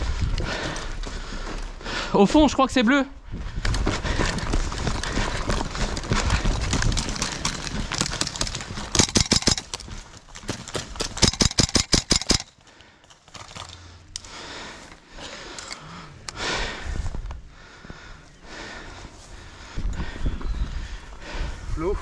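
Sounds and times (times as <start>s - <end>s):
airsoft gun firing bursts: 8.9s - 9.7s, 11.0s - 12.5s.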